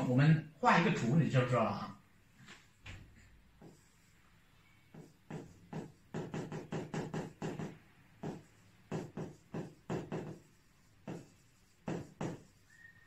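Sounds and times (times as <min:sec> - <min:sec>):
pen scratching and tapping: 0:03.6 - 0:04.0, 0:04.9 - 0:12.6.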